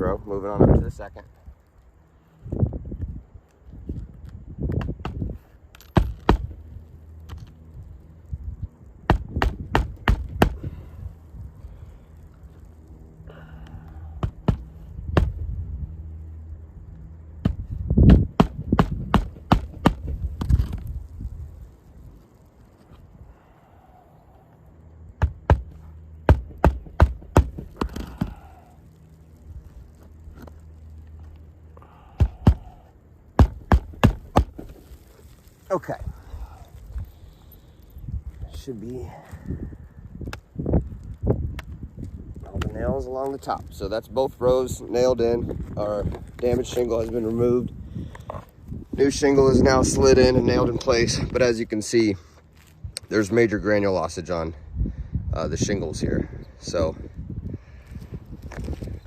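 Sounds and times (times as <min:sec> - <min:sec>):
low steady hum: 0:00.0 - 0:59.0
hammer nailing roofing shingles: 0:04.8 - 0:06.6, 0:09.1 - 0:10.8, 0:14.2 - 0:15.4, 0:17.4 - 0:20.8, 0:25.2 - 0:28.5, 0:32.2 - 0:32.8, 0:33.4 - 0:34.8
hammer striking nails: 0:17.4 - 0:20.1, 0:26.3 - 0:28.3, 0:33.4 - 0:34.6.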